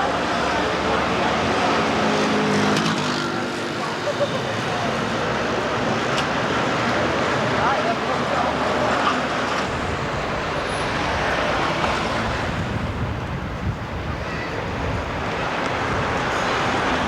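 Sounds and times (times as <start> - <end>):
street traffic noise: 0.0 - 17.0.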